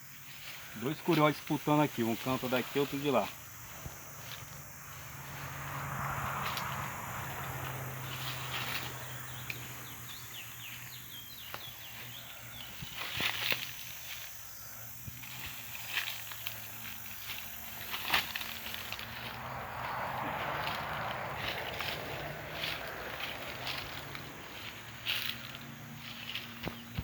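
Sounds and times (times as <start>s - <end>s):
steady low hum: 0.0s - 27.0s
distant finches singing: 7.2s - 13.7s.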